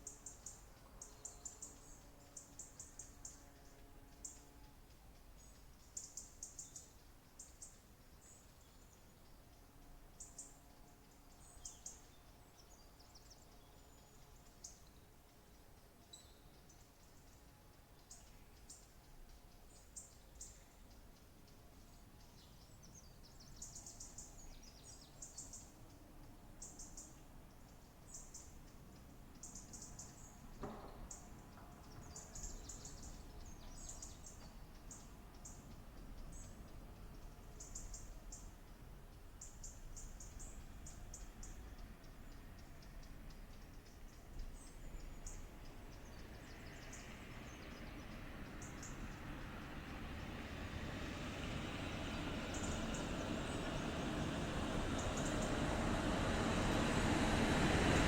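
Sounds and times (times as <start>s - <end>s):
birds chirping: 26.6s - 38.5s, 39.2s - 58.0s.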